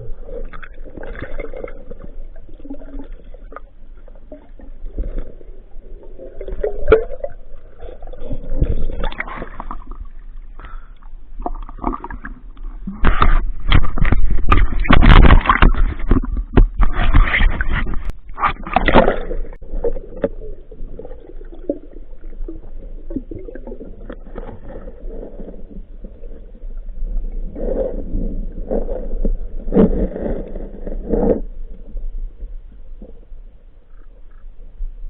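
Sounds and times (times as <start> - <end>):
underwater gurgling and sloshing: 0.0 - 35.0.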